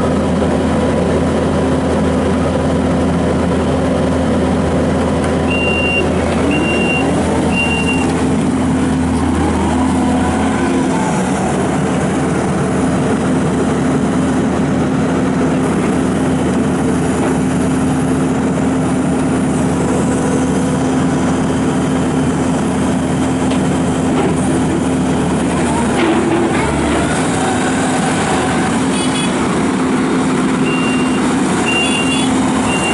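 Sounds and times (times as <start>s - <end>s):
diesel engine running: 0.0s - 32.9s
backup alarm beeps: 5.5s - 8.1s, 30.7s - 32.9s.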